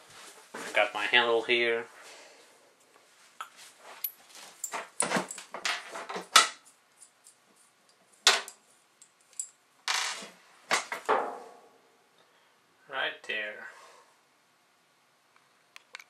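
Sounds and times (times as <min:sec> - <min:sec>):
metal clinks and knocks: 0:04.0 - 0:10.2.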